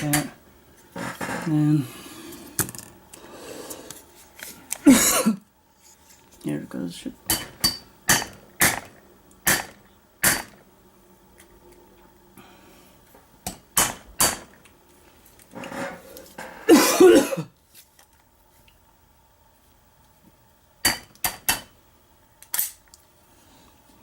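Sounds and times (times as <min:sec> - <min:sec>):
person coughing: 0:04.8 - 0:05.4, 0:16.6 - 0:17.6.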